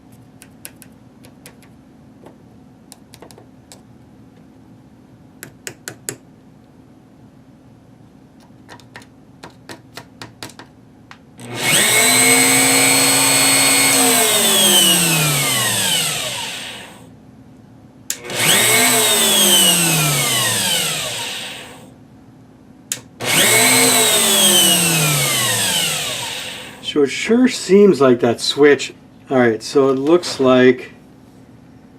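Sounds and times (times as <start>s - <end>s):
router motor running up and winding down: 11.4s - 17.0s, 18.1s - 21.8s, 23.2s - 26.8s.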